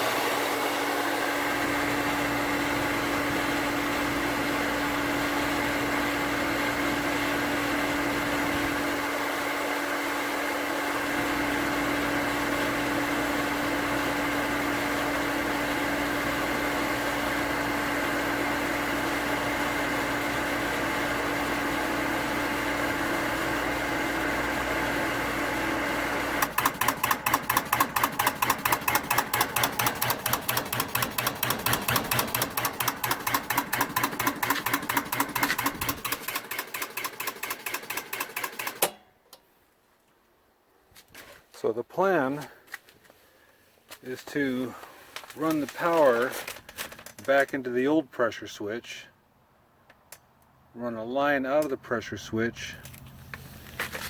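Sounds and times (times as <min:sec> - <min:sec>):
pump motor humming: 0:00.0 - 0:39.0
pressure switch chattering: 0:26.4 - 0:39.0.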